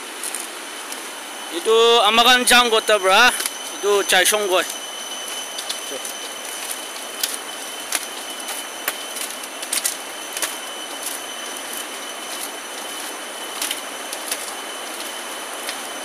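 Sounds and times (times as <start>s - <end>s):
faint high tone: 1.5s - 9.2s.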